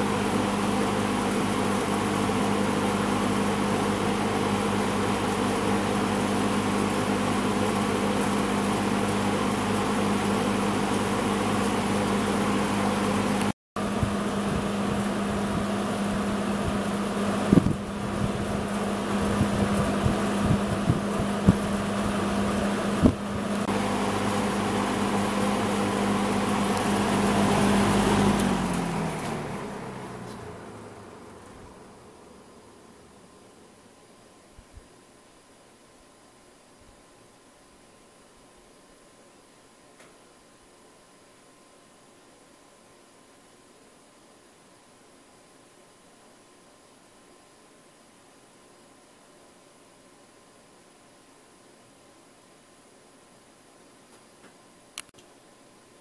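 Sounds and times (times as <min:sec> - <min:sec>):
box fan motor hum: 0:00.0 - 0:34.2.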